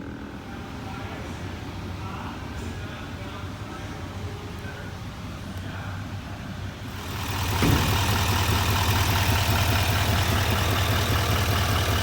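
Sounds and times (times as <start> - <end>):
diesel engine idling: 0.0 - 12.0
engine rushing noise: 6.9 - 9.3.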